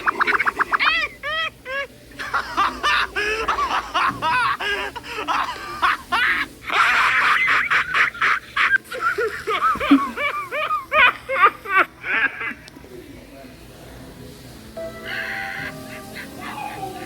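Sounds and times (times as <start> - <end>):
cartoon laugh sound effects: 0.0 - 12.6.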